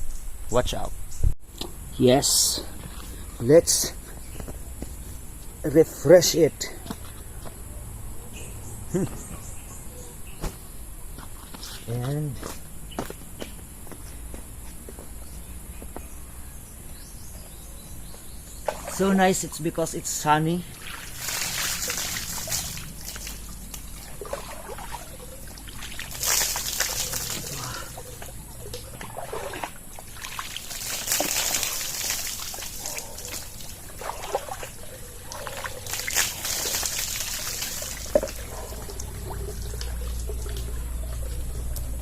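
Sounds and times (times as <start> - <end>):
water poured and splashing: 18.6 - 19.2, 20.7 - 41.5
water trickling and dripping: 20.6 - 42.0.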